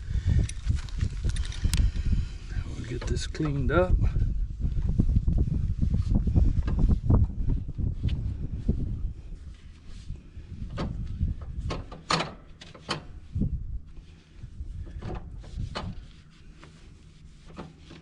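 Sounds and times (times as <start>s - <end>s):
wiping up oil: 13.2s - 18.0s.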